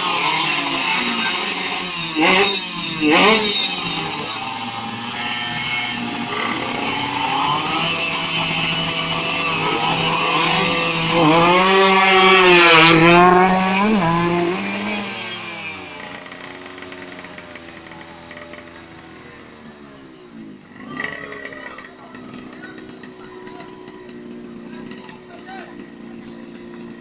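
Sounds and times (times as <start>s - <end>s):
motorcycle engine revving hard: 0.0s - 27.0s.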